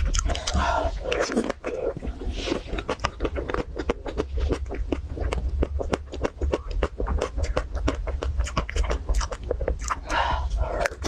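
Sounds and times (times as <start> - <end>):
crunching and chewing ice cream: 0.0 - 11.0.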